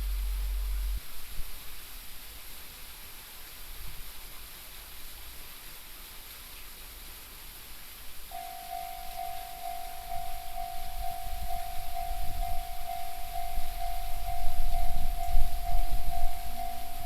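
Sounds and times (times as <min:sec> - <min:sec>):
low rumble: 0:00.0 - 0:01.0
outdoor background hiss: 0:00.0 - 0:17.0.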